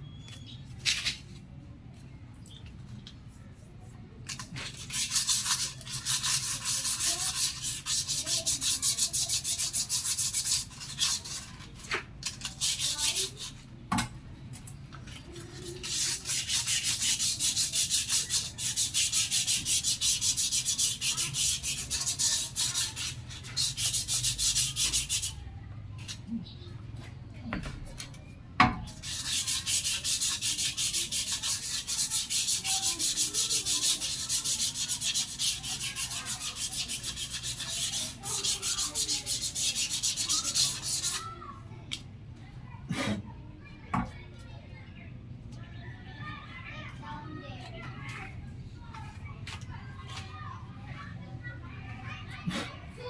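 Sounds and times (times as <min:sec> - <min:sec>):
fast rubbing strokes: 0:04.6 - 0:13.6, 0:15.4 - 0:25.4, 0:28.9 - 0:41.3.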